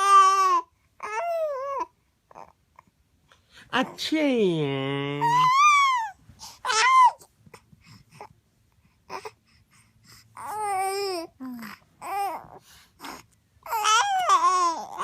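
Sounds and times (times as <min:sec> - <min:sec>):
baby fussing and crying: 0:00.0 - 0:02.6, 0:05.0 - 0:08.4, 0:09.0 - 0:15.0.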